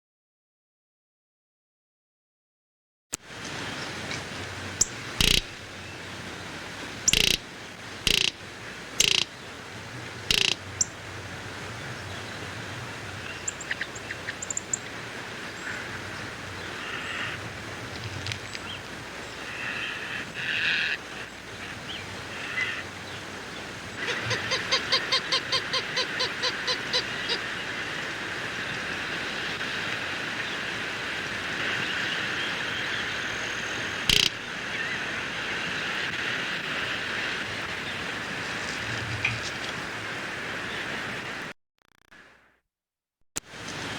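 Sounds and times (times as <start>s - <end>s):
steady hiss: 3.2s - 41.4s
short bird calls: 4.8s - 5.8s, 7.1s - 7.4s, 8.0s - 8.4s, 9.0s - 9.3s, 10.3s - 10.6s
sharp click: 5.2s - 5.5s, 7.1s - 7.4s, 34.1s - 34.3s.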